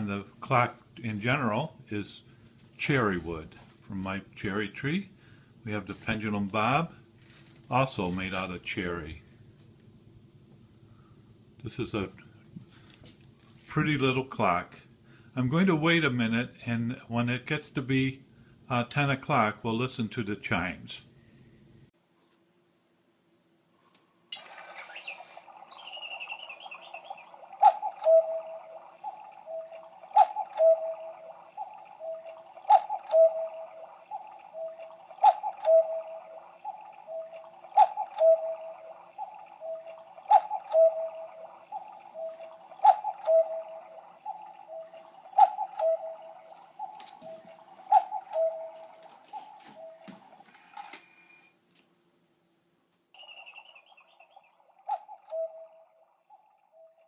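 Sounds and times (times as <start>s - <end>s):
cuckoo two-note call: 27.6s - 28.7s, 29.5s - 31.3s, 32.0s - 33.8s, 34.5s - 36.4s, 38.2s - 38.9s, 39.6s - 41.4s, 42.2s - 44.0s, 44.7s - 46.3s, 47.9s - 48.9s, 55.3s - 55.8s.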